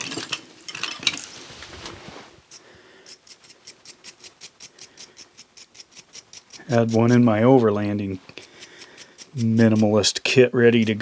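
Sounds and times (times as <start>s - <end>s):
wire brush scrubbing metal: 2.4s - 11.0s.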